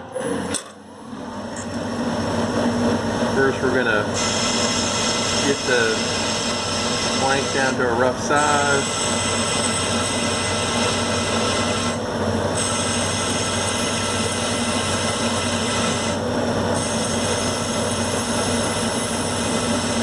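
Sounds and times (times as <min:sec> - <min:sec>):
lathe running: 0:00.0 - 0:20.0
cutting tool hissing on steel: 0:04.1 - 0:20.0.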